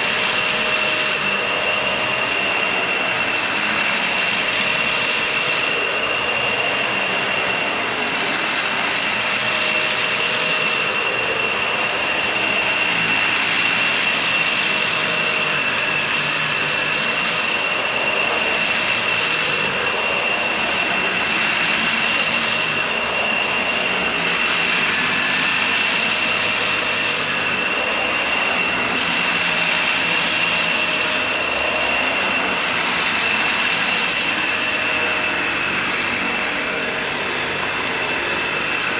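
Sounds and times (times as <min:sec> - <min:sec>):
vacuum cleaner running over rug: 0:00.0 - 0:38.9.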